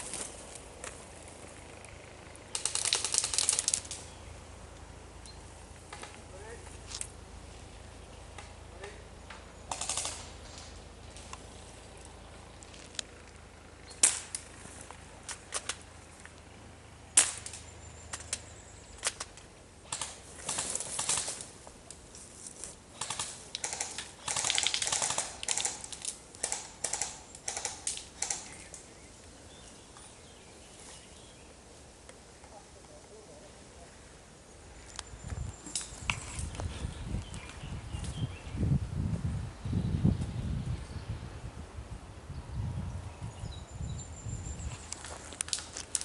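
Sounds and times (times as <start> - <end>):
airsoft guns firing: 2.5 - 4.0, 9.7 - 10.7, 19.8 - 21.4, 23.0 - 28.5.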